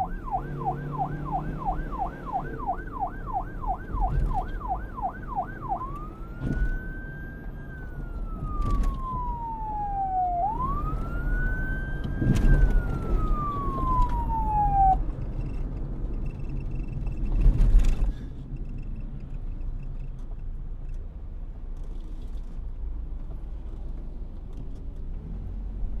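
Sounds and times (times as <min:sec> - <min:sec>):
police siren wailing: 0:00.0 - 0:15.3.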